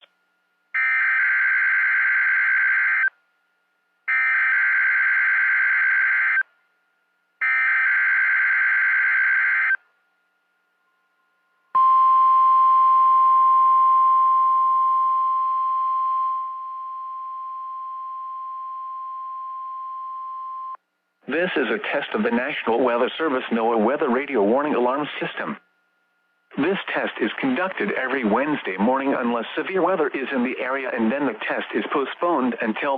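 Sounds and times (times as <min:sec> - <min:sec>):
steady warning alarm tone: 0:00.8 - 0:03.1, 0:04.1 - 0:06.4, 0:07.4 - 0:09.8.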